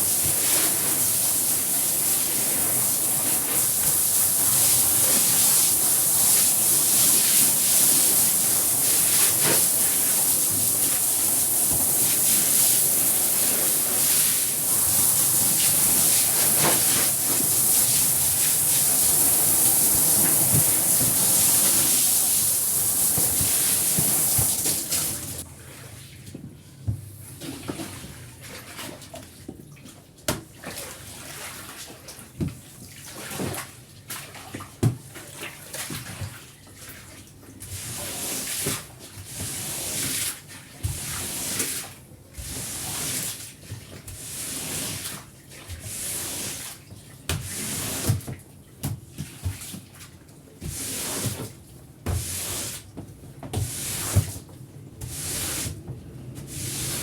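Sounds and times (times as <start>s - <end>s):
water spraying with loud hiss: 0.0s - 25.4s, 42.4s - 43.3s, 53.6s - 54.3s, 55.0s - 55.8s, 56.5s - 57.0s
wet scrubbing swishes and splashes: 56.4s - 57.0s.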